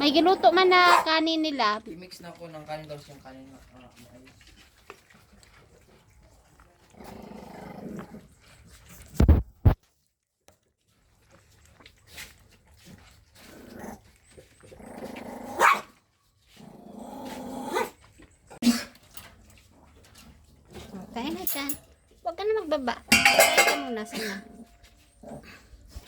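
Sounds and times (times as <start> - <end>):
dogs growling and barking: 0.0 - 1.4, 5.1 - 9.1, 12.8 - 21.6, 23.1 - 26.0.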